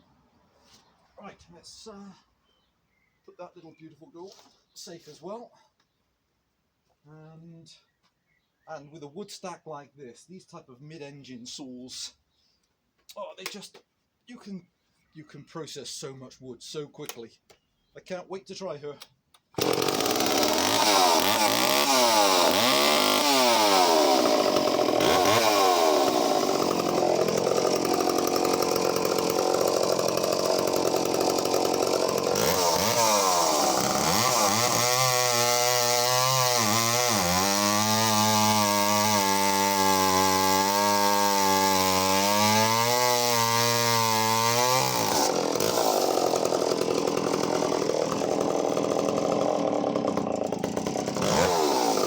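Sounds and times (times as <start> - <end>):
chainsaw cutting a log: 19.6 - 52.0.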